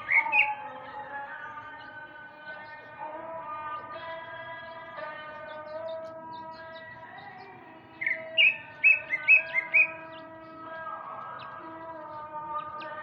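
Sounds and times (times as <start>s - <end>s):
bird whistled song: 0.0s - 0.6s, 8.0s - 10.2s.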